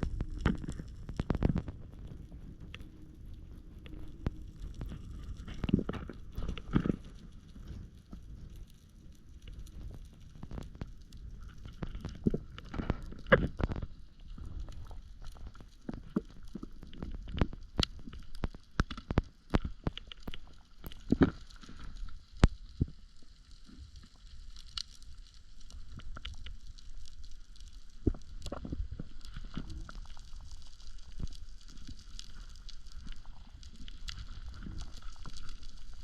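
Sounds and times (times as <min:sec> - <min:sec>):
underwater clicks and knocks: 0:00.0 - 0:07.8, 0:09.4 - 0:23.0
low underwater rumble: 0:00.0 - 0:36.0.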